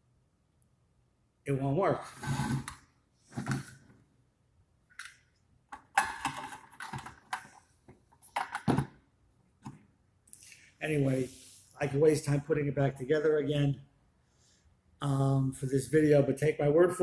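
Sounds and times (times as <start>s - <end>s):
plastic parts and screws clattering: 5.8s - 7.6s.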